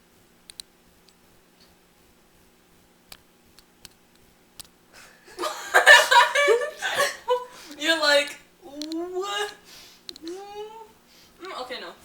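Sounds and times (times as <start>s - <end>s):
faint clicks and taps: 0.5s - 1.8s, 3.1s - 4.8s, 8.8s - 9.1s
burst of laughter: 5.3s - 7.5s
voices: 5.4s - 12.0s.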